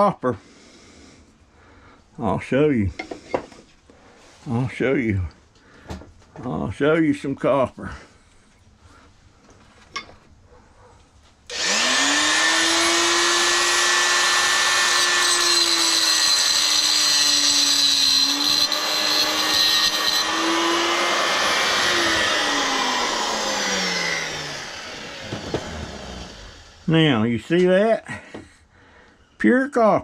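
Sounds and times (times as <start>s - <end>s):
power tool motor running: 11.5s - 26.9s.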